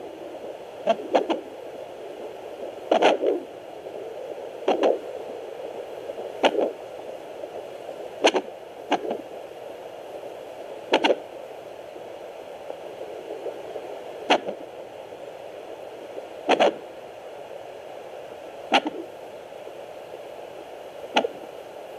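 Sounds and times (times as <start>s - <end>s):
sharp thumps of fetal hiccups: 8.2s - 9.2s, 10.9s - 11.2s, 14.3s - 14.6s, 16.5s - 16.8s, 18.7s - 19.1s, 21.2s - 21.4s.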